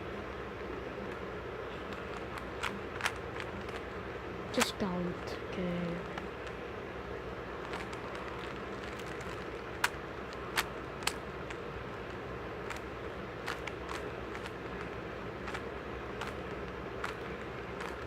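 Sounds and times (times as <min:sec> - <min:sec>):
steady background hum: 0:00.0 - 0:18.0
plastic cube clicks: 0:01.9 - 0:03.9, 0:07.6 - 0:18.0.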